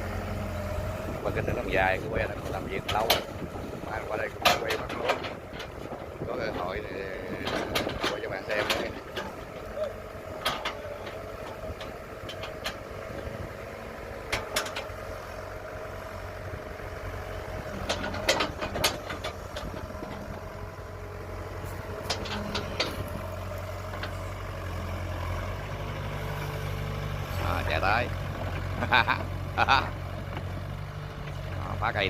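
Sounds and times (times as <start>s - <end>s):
excavator diesel engine running: 0.0s - 32.0s
knocks and clanks: 2.8s - 3.3s, 4.3s - 5.8s, 7.3s - 9.6s, 10.4s - 12.8s, 14.3s - 14.9s, 17.7s - 20.4s, 22.0s - 23.2s.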